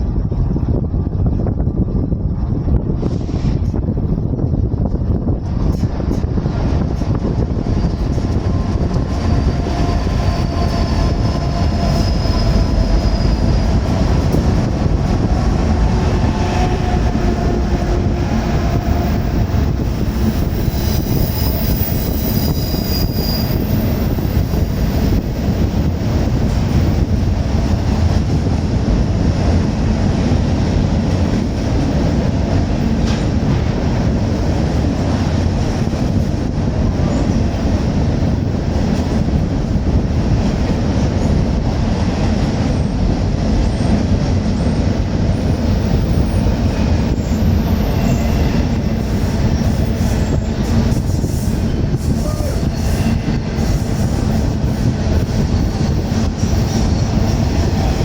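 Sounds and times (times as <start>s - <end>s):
freight train rumbling past: 0.0s - 58.0s
train wheel squeal: 7.2s - 14.7s, 16.2s - 27.4s, 45.4s - 58.0s.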